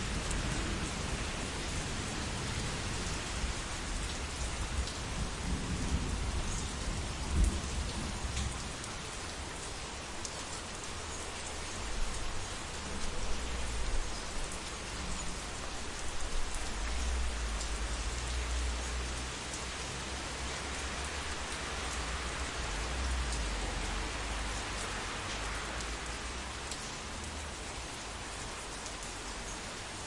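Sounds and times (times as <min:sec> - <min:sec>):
low rumble of thunder: 0:00.0 - 0:08.9
steady rain falling: 0:00.0 - 0:30.0.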